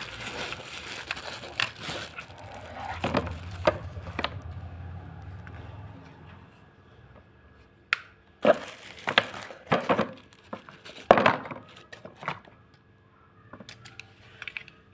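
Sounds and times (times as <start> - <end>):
packaging rustling and scraping: 0.0 - 4.6, 8.4 - 12.0.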